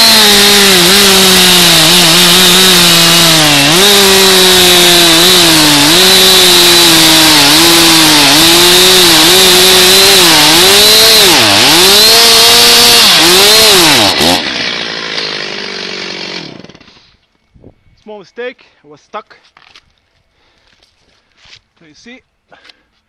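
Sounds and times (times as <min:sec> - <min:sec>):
chainsaw idling: 0:00.0 - 0:17.0
chainsaw cutting wood: 0:00.0 - 0:17.1.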